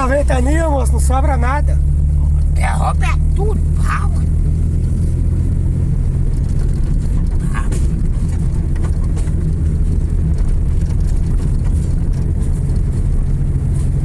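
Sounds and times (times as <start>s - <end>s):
car engine and road rumble: 0.0s - 14.0s.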